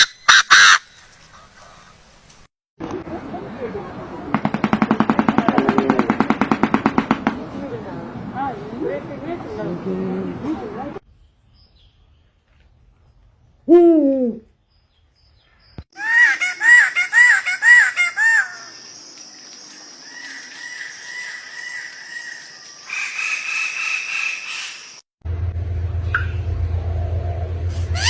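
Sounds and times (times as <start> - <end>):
bird calls: 0.0 - 2.4, 14.4 - 25.0.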